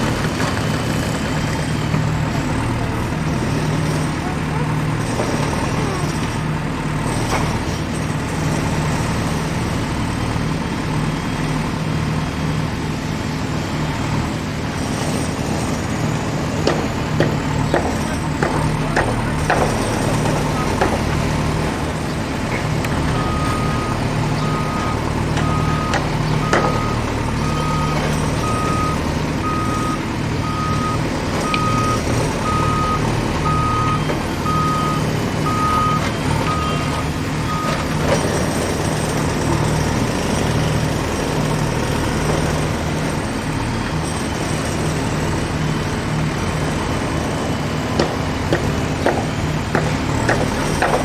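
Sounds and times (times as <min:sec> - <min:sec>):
clanks and knocks of work: 0:00.0 - 0:08.7, 0:15.0 - 0:45.4, 0:46.8 - 0:51.0
heavy vehicle engine running: 0:00.0 - 0:51.0
reversing alarm beeping: 0:16.7 - 0:38.4.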